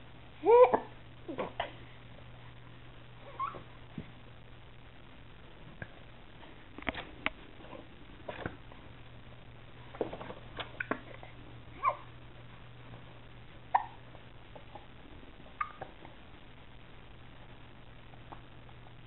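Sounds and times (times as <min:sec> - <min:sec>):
baby hiccupping: 0:13.7 - 0:14.0.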